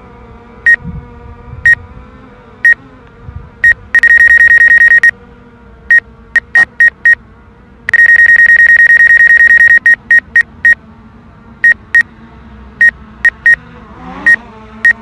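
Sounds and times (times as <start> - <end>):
remote controller warning beeps: 3.6 - 5.1, 5.9 - 7.2, 7.9 - 10.5.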